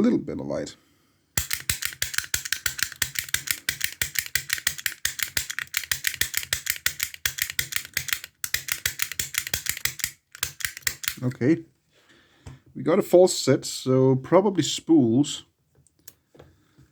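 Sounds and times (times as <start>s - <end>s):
pick gun clicking in lock: 1.4s - 11.2s.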